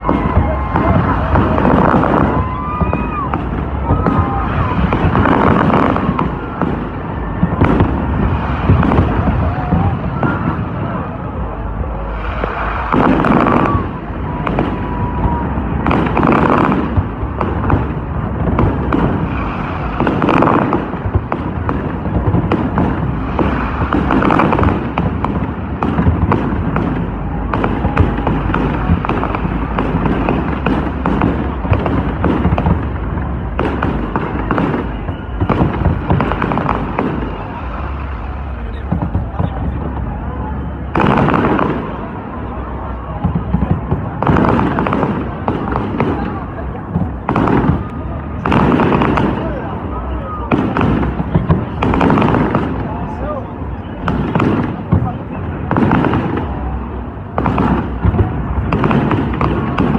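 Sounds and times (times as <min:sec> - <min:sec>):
fireworks crackle: 0:00.0 - 0:59.9
heavy firework bangs: 0:00.0 - 0:59.9
firework shells bursting: 0:11.8 - 0:40.0.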